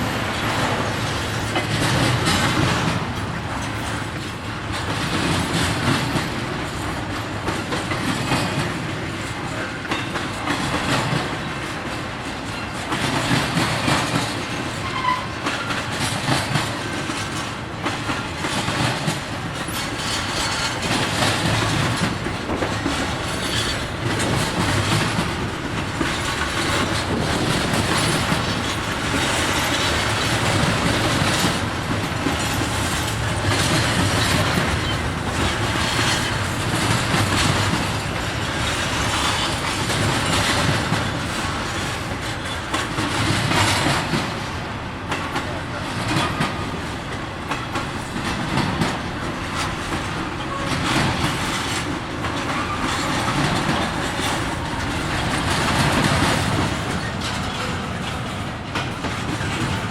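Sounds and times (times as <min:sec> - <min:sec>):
train cars rattling: 0:00.0 - 0:59.9
train wheels clicking over rail joints: 0:00.0 - 0:59.9.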